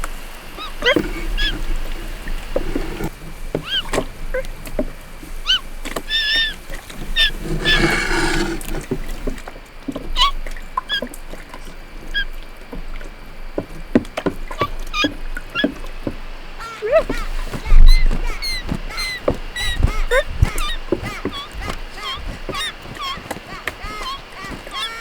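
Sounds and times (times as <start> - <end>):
high squeaks and chirps: 0.5 - 4.0, 5.4 - 9.2, 16.6 - 25.0.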